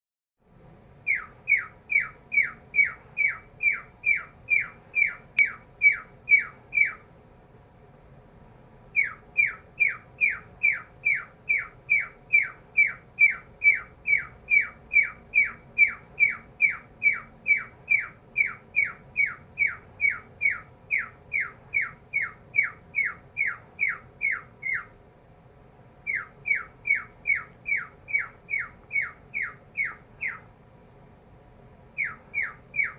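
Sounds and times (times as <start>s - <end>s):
cockatiel chirping: 1.0s - 7.1s, 8.9s - 25.0s, 26.0s - 30.5s, 31.9s - 32.9s.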